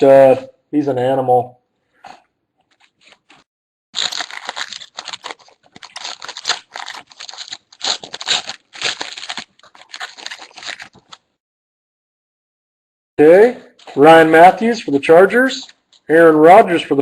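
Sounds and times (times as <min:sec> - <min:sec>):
wrapper tearing and crinkling: 0:02.7 - 0:03.4, 0:04.0 - 0:11.4.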